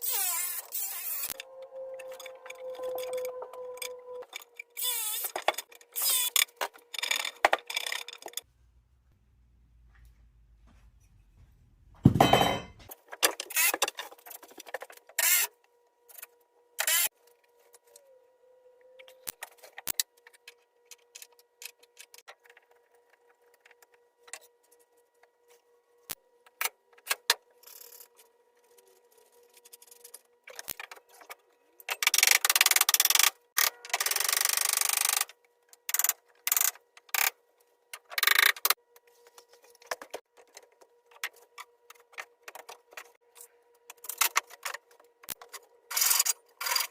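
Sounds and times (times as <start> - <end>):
boards and tools clattering: 12.0 - 15.1.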